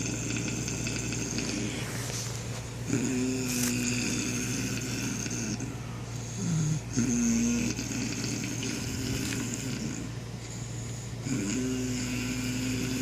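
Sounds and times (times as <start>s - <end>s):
person snoring: 0.0s - 2.2s, 2.9s - 13.0s.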